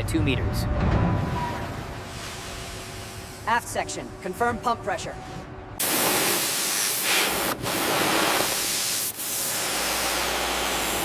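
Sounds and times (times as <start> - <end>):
pressurised spray hissing: 5.8 - 11.0.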